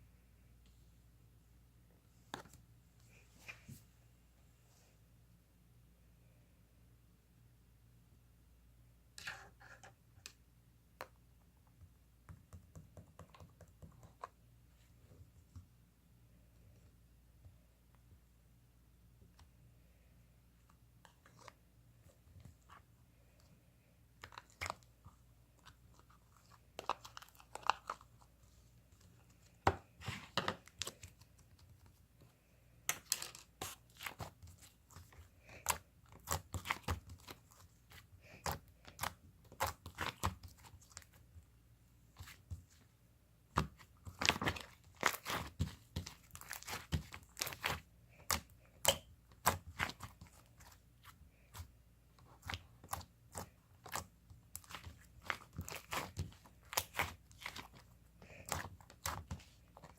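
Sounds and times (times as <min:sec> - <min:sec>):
crackling and crinkling: 0:19.2 - 0:59.9.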